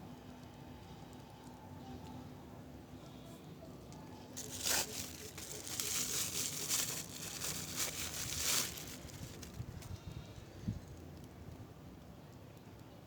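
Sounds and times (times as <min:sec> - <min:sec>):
packaging crinkling and tearing: 0:04.4 - 0:09.9.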